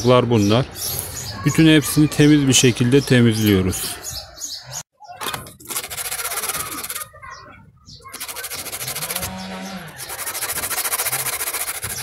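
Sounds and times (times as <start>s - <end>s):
sandpaper rubbing on metal: 5.6s - 7.1s, 8.1s - 12.0s.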